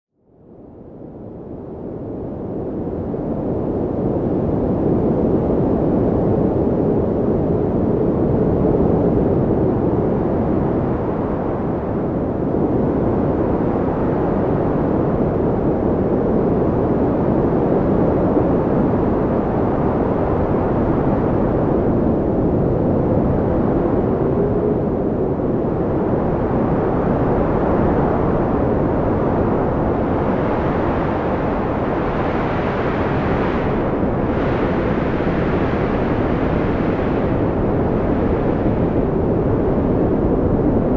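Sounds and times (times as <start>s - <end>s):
rushing wind: 0.4s - 40.9s.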